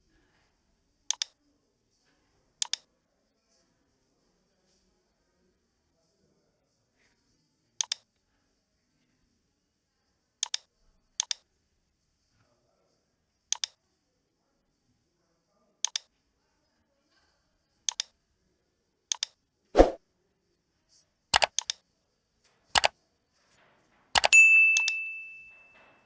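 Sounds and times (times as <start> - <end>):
computer mouse clicking: 1.1 - 1.4, 2.6 - 2.8, 7.8 - 8.0, 10.4 - 11.4, 13.5 - 13.8, 15.8 - 16.1, 17.9 - 18.1, 19.1 - 20.0, 21.4 - 21.8, 22.8 - 23.0.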